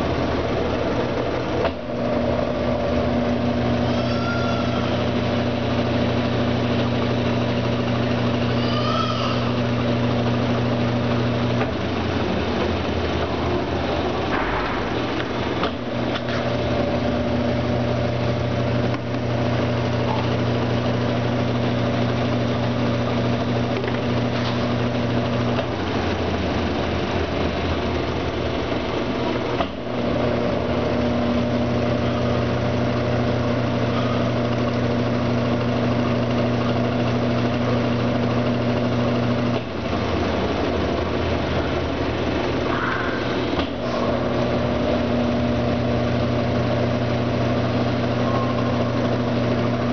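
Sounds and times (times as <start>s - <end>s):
washing machine humming: 0.0s - 49.9s.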